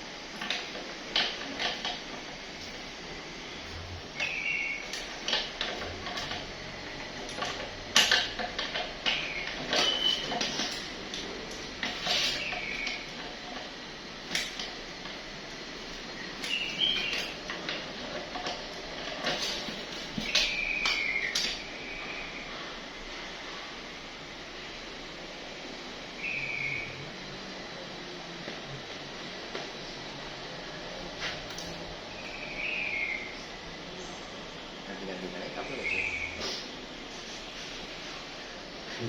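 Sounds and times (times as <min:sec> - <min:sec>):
metal parts clicking and scraping: 0:07.2 - 0:13.7, 0:15.9 - 0:21.6.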